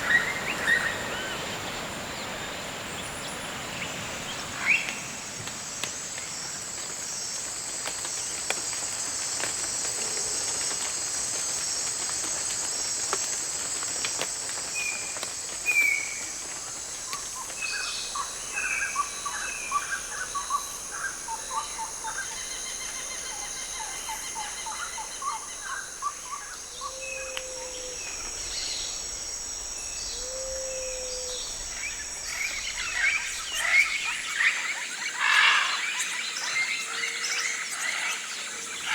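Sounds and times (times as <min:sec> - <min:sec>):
high-pitched insect drone: 0:08.7 - 0:38.9.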